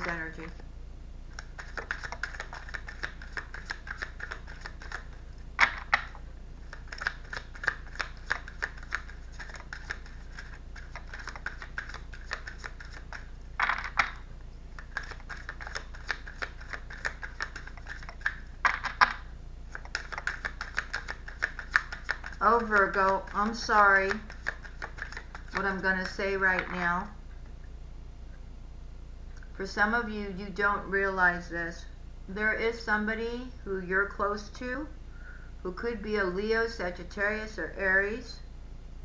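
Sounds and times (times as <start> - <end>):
cards shuffling: 1.3 - 26.8
card swishes: 1.4 - 14.2, 14.8 - 25.8.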